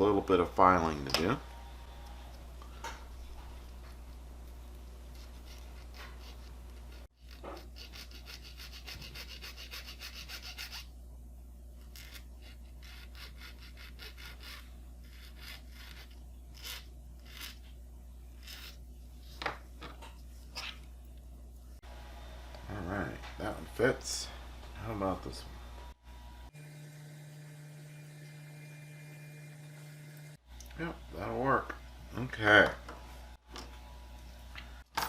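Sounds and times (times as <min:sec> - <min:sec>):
low hum: 0:00.3 - 0:07.4
hand file scraping a tube: 0:05.2 - 0:10.9, 0:11.8 - 0:17.6, 0:18.4 - 0:18.8.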